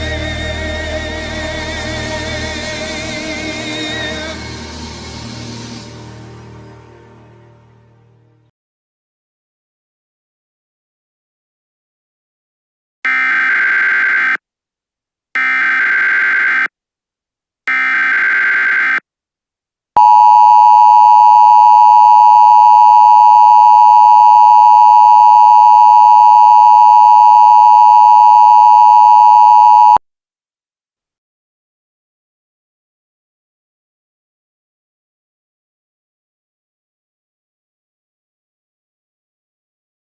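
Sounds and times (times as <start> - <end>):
screechy digital data tones: 13.1 - 14.4, 15.4 - 16.7, 17.7 - 19.0
piercing two-tone attention signal: 20.0 - 30.0.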